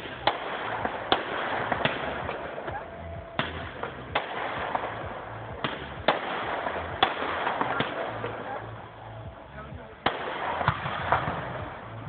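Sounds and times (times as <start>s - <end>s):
fireworks shells bursting: 0.0s - 9.0s
continuous fireworks crackle: 0.0s - 12.0s.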